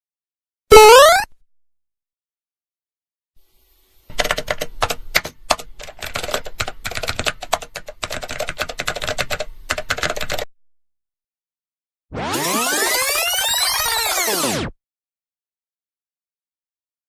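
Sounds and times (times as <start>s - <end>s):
rapid typing on keys: 4.1s - 10.5s.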